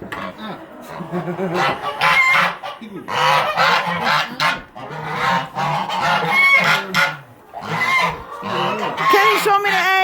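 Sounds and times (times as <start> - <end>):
poultry honking calls: 0.1 - 10.0.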